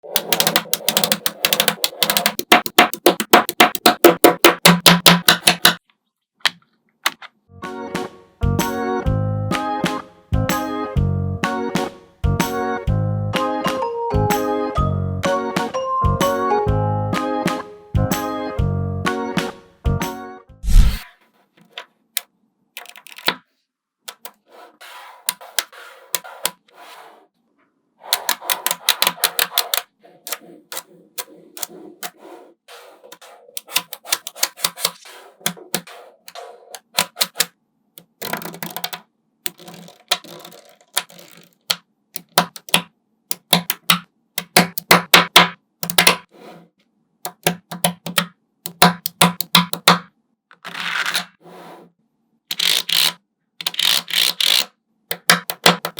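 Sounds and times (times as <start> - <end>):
magnetic balls clicking together: 0.0 - 5.8, 36.8 - 46.3, 47.3 - 50.1, 52.5 - 55.9.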